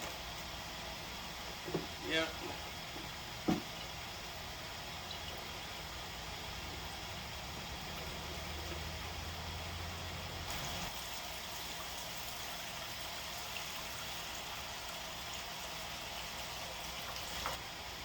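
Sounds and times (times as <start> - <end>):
liquid pouring: 10.5 - 17.6.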